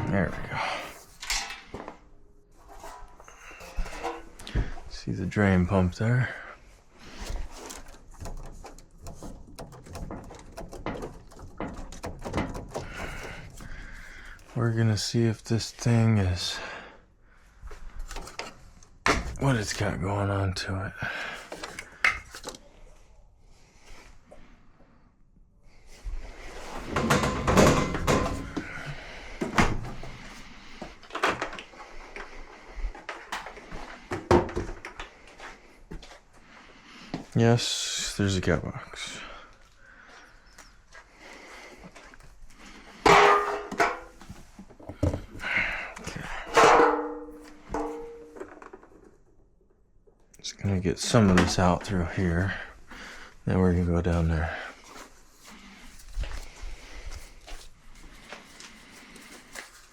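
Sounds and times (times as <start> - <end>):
knocks and rattles of handled parts: 0.0 - 4.9, 6.6 - 15.1, 21.2 - 22.8, 26.4 - 36.2, 41.7 - 53.0
handling clicks and rustles: 0.0 - 15.1.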